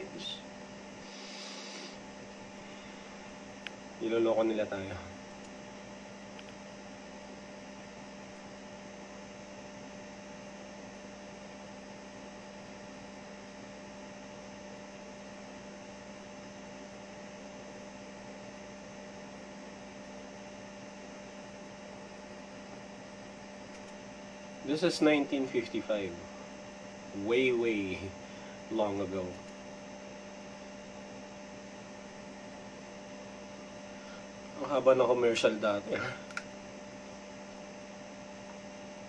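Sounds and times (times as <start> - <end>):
constant hiss: 0.0 - 5.6
electrical hum: 0.0 - 39.0.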